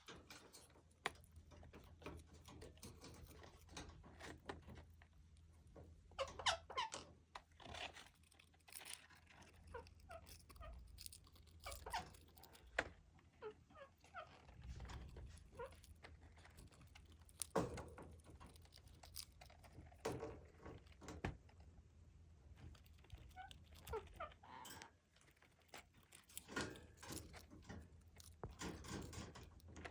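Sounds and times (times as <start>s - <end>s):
parrot chirping and squeaking: 6.2s - 7.0s, 9.6s - 12.6s, 13.4s - 15.8s, 23.1s - 24.9s.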